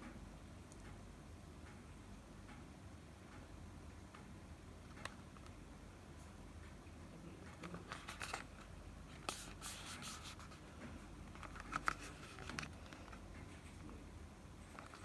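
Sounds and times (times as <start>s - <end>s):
packaging scraping and rubbing: 7.8s - 8.6s, 9.2s - 10.6s, 11.4s - 12.8s.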